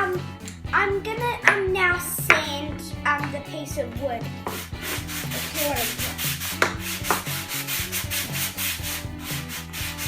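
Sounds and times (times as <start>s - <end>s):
wood being sanded by hand: 4.4s - 10.0s.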